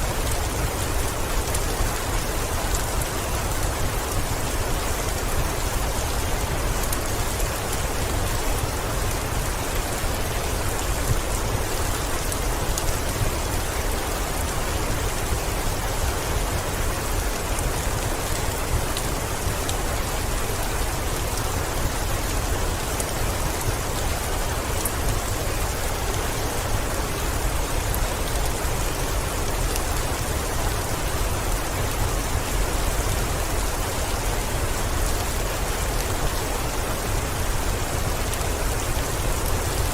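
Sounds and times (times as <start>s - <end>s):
heavy rain on a window: 0.0s - 39.9s.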